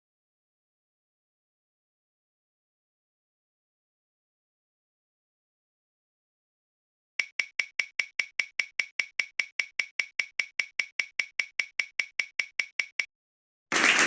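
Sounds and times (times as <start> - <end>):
prize wheel ticking: 7.2 - 13.1.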